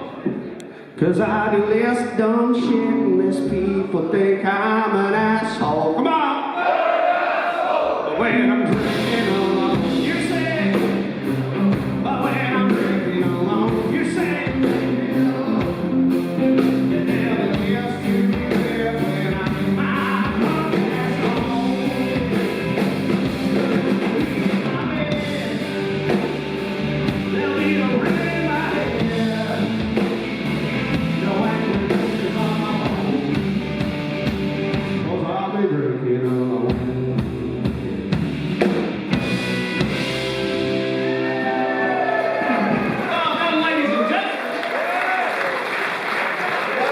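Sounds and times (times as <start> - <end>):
guitars: 8.1 - 43.8
live rock band playing: 8.4 - 43.1
drum kit: 8.6 - 35.1, 36.2 - 43.1.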